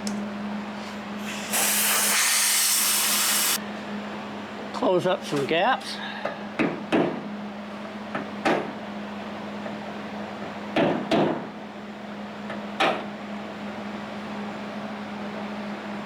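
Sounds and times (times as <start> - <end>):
hammer knocking on sheet metal: 6.6 - 7.2, 10.8 - 11.5.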